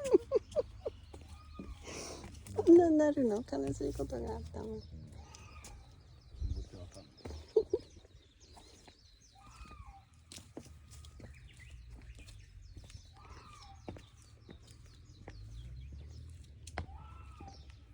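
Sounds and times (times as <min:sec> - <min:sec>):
muntjac deer crying: 0:00.0 - 0:03.1, 0:05.0 - 0:06.2, 0:09.4 - 0:11.3, 0:13.1 - 0:14.1, 0:16.8 - 0:17.9
small birds chirping: 0:00.0 - 0:17.9.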